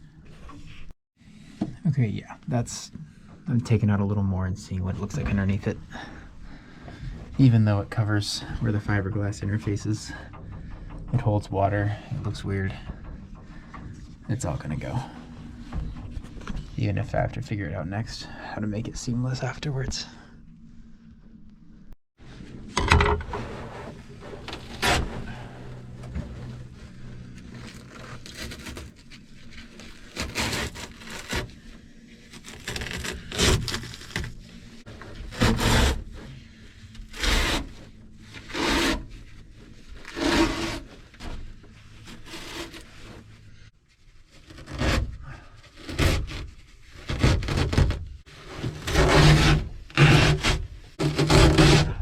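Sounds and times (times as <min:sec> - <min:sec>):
carpet lining scraped off: 0:23.4 - 0:31.7, 0:32.3 - 0:43.6, 0:44.2 - 0:52.0.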